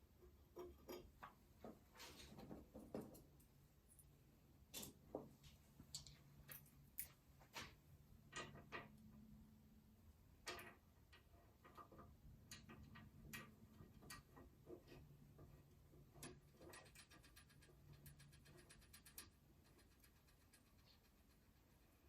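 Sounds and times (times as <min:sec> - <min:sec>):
faint clicks and light knocks: 0:04.7 - 0:09.1.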